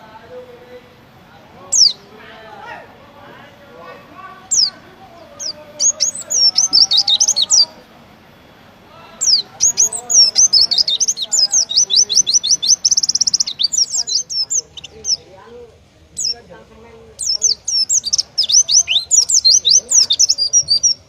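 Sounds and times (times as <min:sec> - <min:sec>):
bird whistling song with trill: 0:01.7 - 0:02.1, 0:05.4 - 0:07.7, 0:09.2 - 0:15.2, 0:16.2 - 0:16.4, 0:17.2 - 0:21.0.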